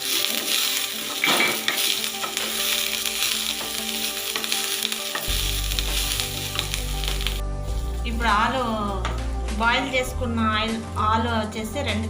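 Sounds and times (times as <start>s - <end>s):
vegetables sizzling in hot oil: 0.0s - 9.4s.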